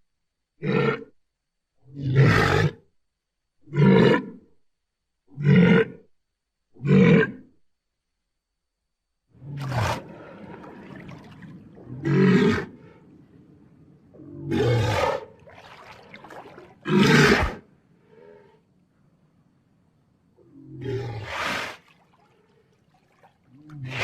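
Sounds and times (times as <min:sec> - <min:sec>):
dinosaur roars: 0:09.4 - 0:13.3, 0:14.1 - 0:15.5, 0:20.5 - 0:21.7
low rumbling: 0:09.5 - 0:15.5.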